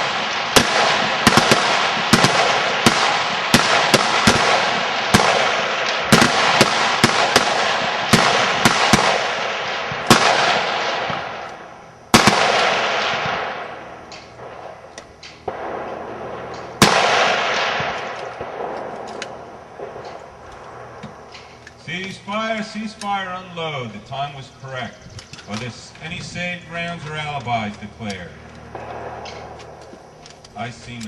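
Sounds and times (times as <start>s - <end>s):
rifle shots with echo: 0.0s - 21.4s, 28.6s - 30.0s.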